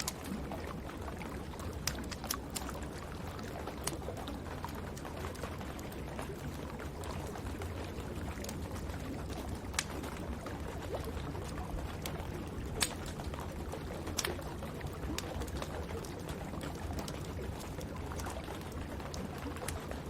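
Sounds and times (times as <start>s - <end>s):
wood fire crackling and popping: 0.0s - 4.3s, 8.2s - 10.2s, 10.8s - 20.0s.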